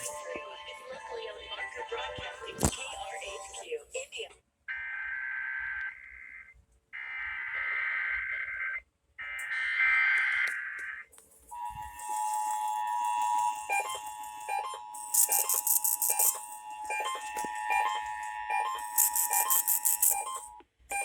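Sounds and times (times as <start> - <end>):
two-tone attention signal: 11.6 - 21.0
warbling digital data tone: 11.6 - 21.0.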